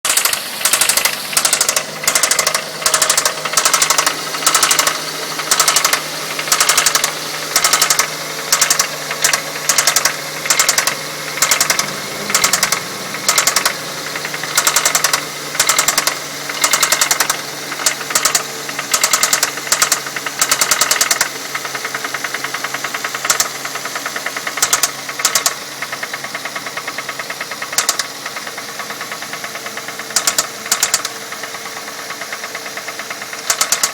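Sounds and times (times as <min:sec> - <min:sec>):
car engine with clicking knock: 0:00.1 - 0:33.9.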